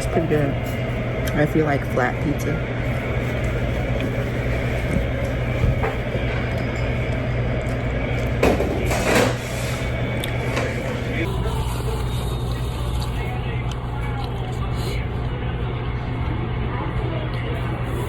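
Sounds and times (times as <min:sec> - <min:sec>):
low background hum: 0:00.0 - 0:18.0.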